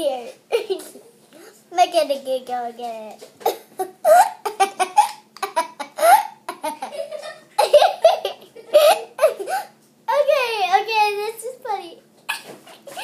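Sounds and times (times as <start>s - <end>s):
girls giggling: 3.8s - 9.7s.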